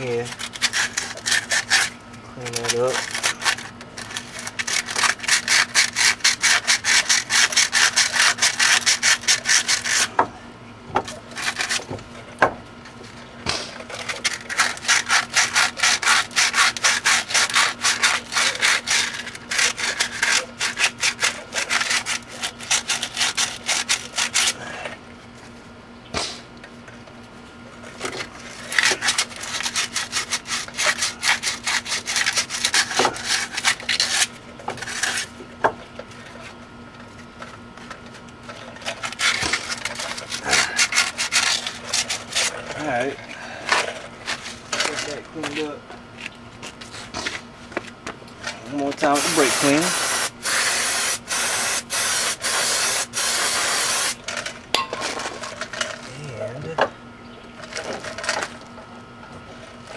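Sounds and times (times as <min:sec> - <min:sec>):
scrubbing on metal: 0:00.0 - 0:10.2, 0:13.8 - 0:24.6, 0:28.4 - 0:35.3, 0:38.8 - 0:42.8.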